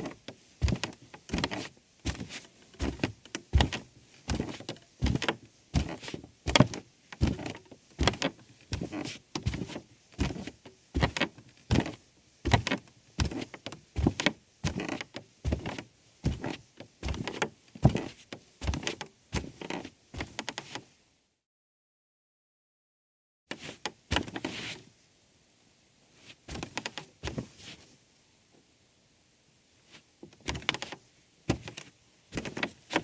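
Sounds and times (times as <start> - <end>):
footsteps on wooden stairs: 0.6 - 18.1.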